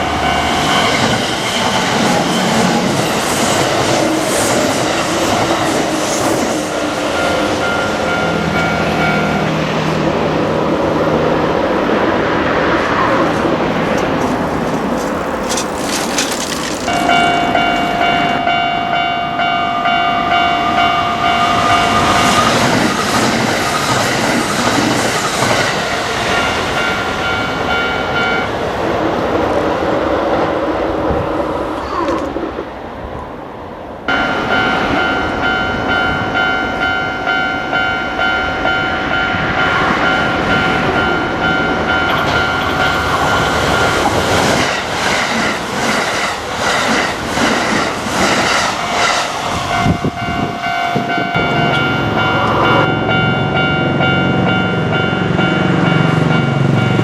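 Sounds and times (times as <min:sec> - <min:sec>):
train wheels clattering: 0:13.2 - 0:18.5, 0:42.0 - 0:52.8
steady pitched tone: 0:16.9 - 0:22.6.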